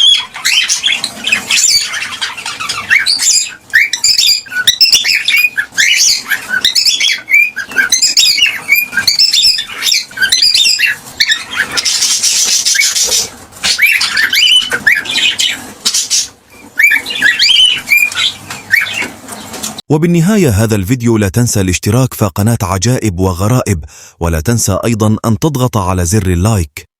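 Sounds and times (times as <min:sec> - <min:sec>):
cockatiels chirping: 0:00.0 - 0:19.8
harsh noisy bird call: 0:00.0 - 0:20.6.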